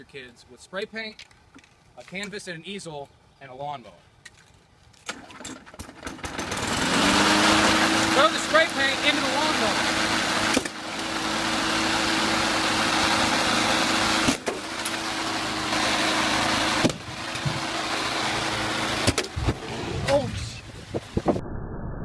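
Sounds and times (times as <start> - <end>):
lawnmower engine running: 5.1 - 20.3.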